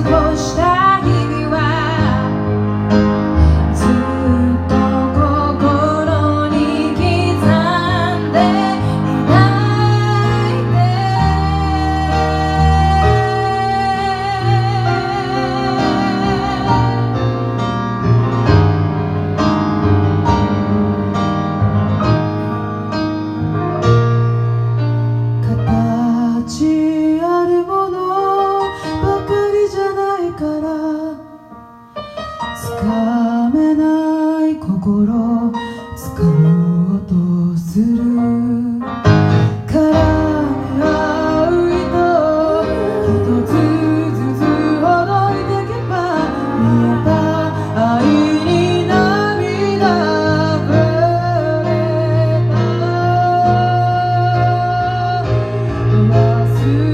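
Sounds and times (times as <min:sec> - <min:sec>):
piano chords: 0:00.0 - 0:56.9
women singing: 0:03.8 - 0:17.2, 0:39.7 - 0:55.3.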